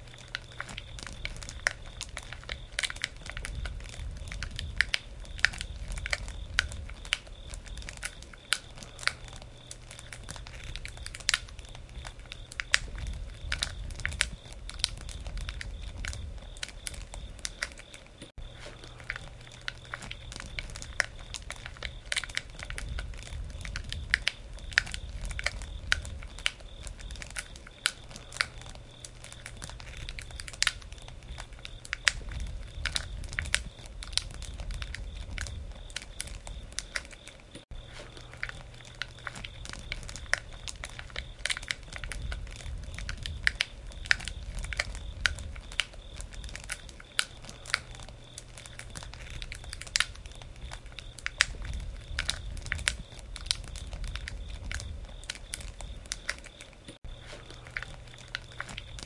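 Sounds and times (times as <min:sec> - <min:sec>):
campfire crackling and popping: 0:00.0 - 0:59.0
low rumble of flames: 0:00.0 - 0:59.0.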